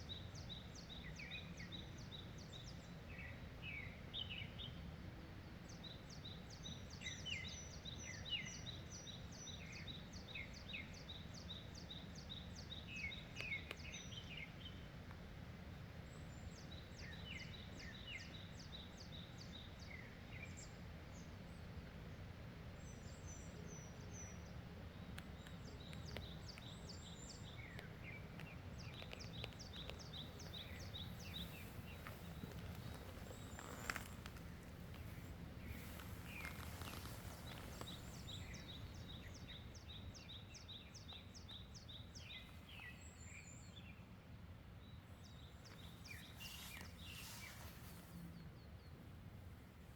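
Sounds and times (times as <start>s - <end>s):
small birds singing: 0.0s - 49.9s
low wind rumble: 21.2s - 40.5s.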